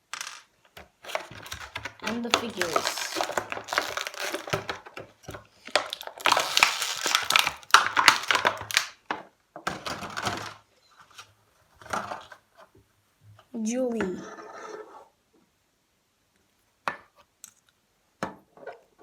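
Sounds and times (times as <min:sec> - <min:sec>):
toy figures clicking and tapping: 0:00.0 - 0:09.0
plastic packaging crinkling: 0:01.0 - 0:09.0.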